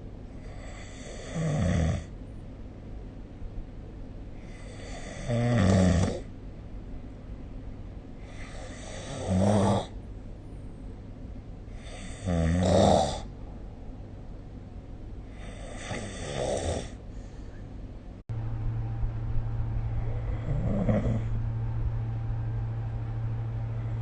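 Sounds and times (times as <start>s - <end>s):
person snoring: 0.4s - 2.1s, 8.3s - 9.9s, 15.3s - 17.0s, 20.1s - 21.3s
steady low hiss: 17.0s - 24.0s.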